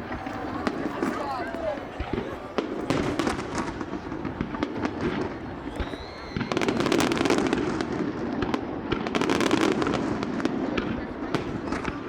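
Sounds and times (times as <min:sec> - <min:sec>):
fireworks bursting and crackling: 0:00.0 - 0:12.0
firework whistle: 0:02.8 - 0:08.0.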